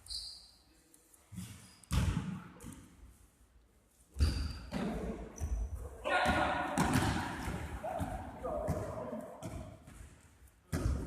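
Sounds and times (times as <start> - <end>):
basketball bouncing on floor: 1.9 - 2.7, 6.2 - 11.0.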